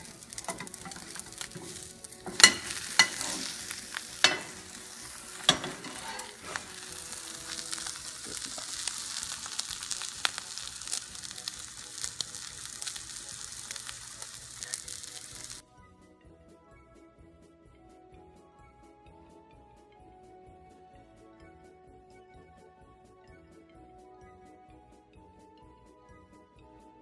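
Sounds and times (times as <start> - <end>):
spatula scraping a pan: 0.0 - 8.9
omelette sizzling in a pan: 0.0 - 15.6.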